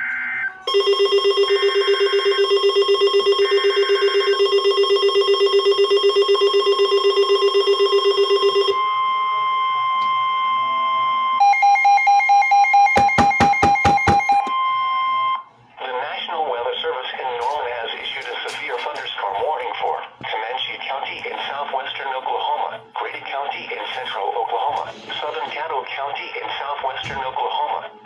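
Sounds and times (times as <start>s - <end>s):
pulsing electronic alarm: 0.0s - 15.5s
steady warning tone: 0.0s - 15.5s.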